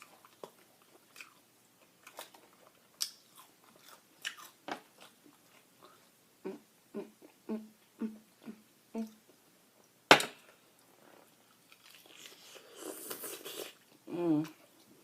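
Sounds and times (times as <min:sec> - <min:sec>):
chewing crispy fried chicken: 0:00.0 - 0:06.1
crackly crunching and rustling: 0:00.0 - 0:06.1, 0:10.5 - 0:15.0.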